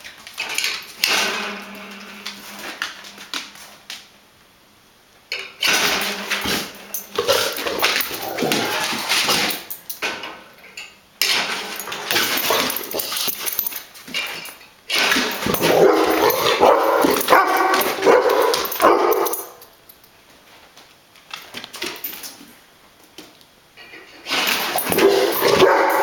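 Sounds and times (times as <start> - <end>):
dog barking and yipping: 15.4 - 19.6, 24.6 - 26.0.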